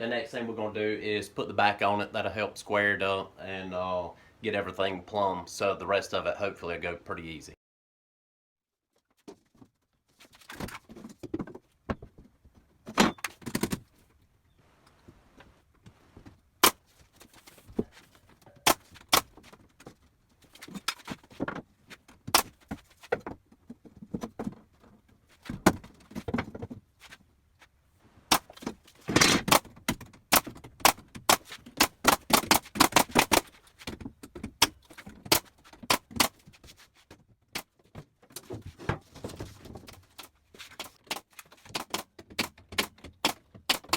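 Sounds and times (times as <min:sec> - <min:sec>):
sharp clicks and knocks: 0:28.3 - 0:36.5, 0:37.5 - 0:43.9.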